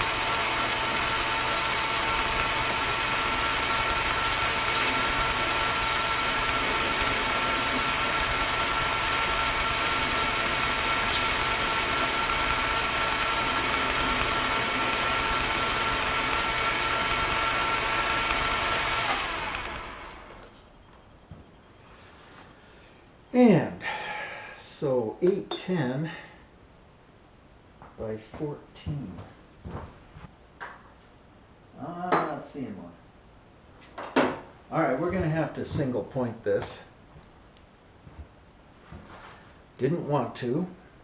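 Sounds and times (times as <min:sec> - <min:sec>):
metal lathe running: 0:00.0 - 0:20.5.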